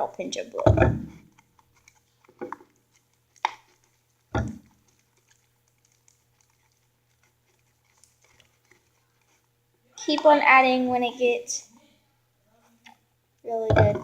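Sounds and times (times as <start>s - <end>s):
slime squishing: 0.0s - 10.8s
dull thump: 0.6s - 1.2s, 13.7s - 14.0s.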